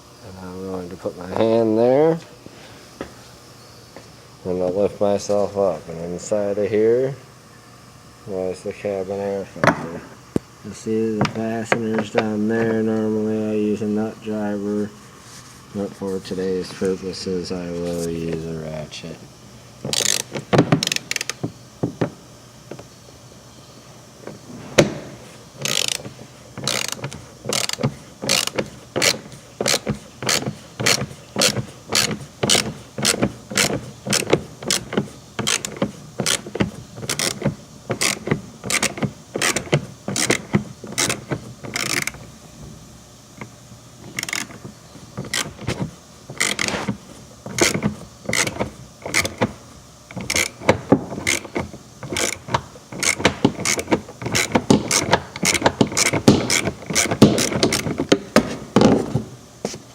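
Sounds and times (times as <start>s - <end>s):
hand ratchet clicking: 19.9s - 21.5s, 25.6s - 42.2s, 44.0s - 44.6s, 45.2s - 58.2s.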